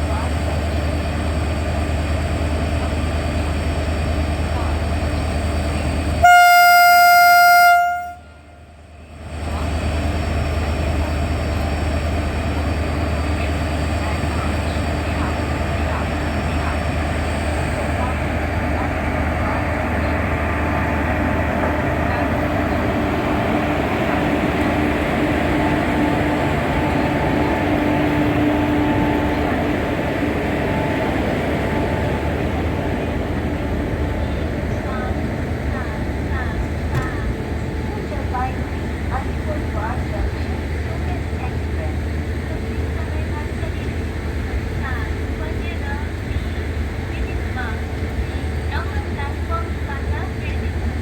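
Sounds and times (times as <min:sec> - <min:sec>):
train rumble and hum: 0:00.0 - 0:51.0
locomotive air horn blast: 0:06.2 - 0:08.7.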